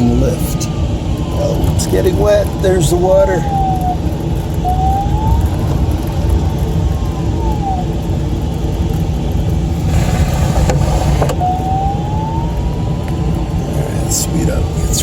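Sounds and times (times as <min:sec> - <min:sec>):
airflow rushing in cockpit: 0:09.2 - 0:11.8.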